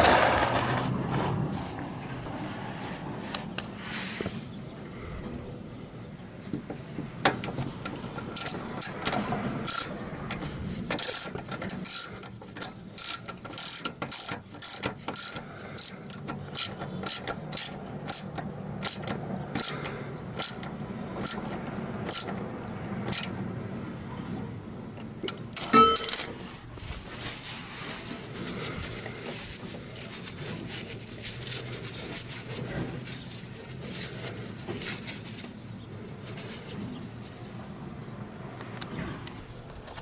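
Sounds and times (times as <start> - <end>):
ratchet wrench clicking: 7.9 - 10.4, 11.0 - 22.4.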